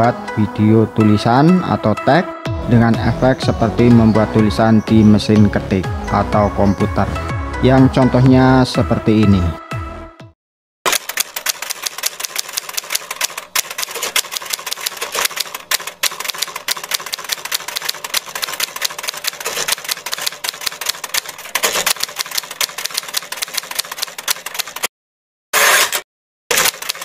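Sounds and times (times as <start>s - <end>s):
typewriter keystroke clicks: 10.9s - 24.9s, 26.5s - 27.0s.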